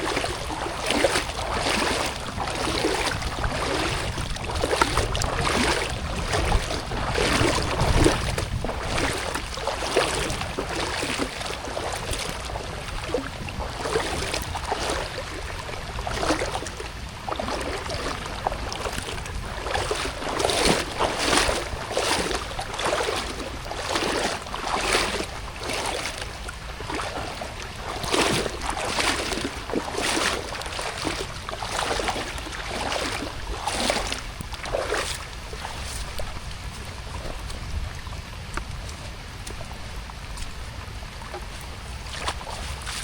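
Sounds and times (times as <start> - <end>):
steady low rumble: 0.0 - 13.9, 33.2 - 43.0
water sloshing and splashing: 0.0 - 43.0.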